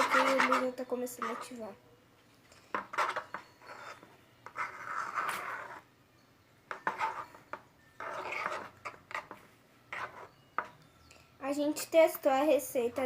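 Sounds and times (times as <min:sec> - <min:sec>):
utensil scraping slime in pot: 0:00.0 - 0:01.7, 0:02.6 - 0:05.9, 0:06.7 - 0:10.8.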